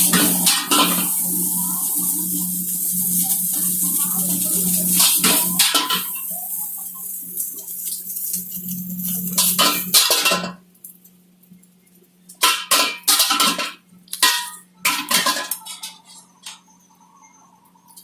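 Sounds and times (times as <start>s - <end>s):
metal kitchenware clattering: 0.0s - 6.9s, 9.1s - 10.6s, 12.4s - 16.7s
steady low hum: 0.0s - 10.3s.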